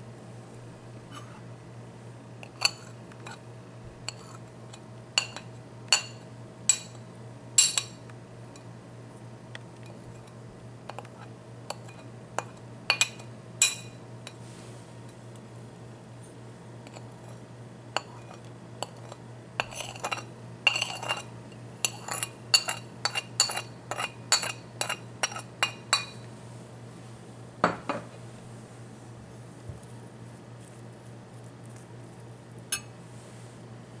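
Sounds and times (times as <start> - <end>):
spoon clinking against bowl: 5.2 - 7.0, 7.6 - 8.0, 11.7 - 14.0, 18.0 - 26.2.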